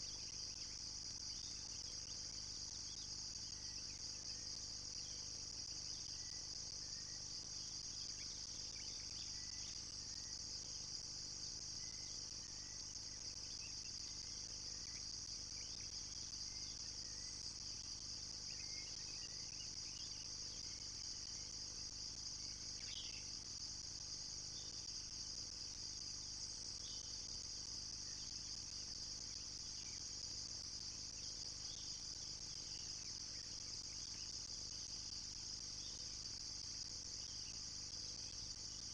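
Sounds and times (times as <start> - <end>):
insects chorus: 0.0 - 38.9
faint bird chirps: 11.8 - 23.5.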